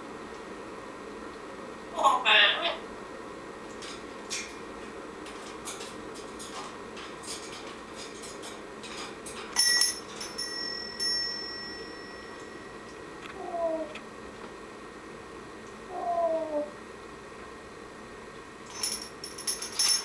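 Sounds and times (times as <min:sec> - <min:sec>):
parrot bell-like ring: 0:09.6 - 0:12.9, 0:18.7 - 0:20.0
parrot imitating cat meow: 0:13.3 - 0:14.0, 0:15.9 - 0:16.8.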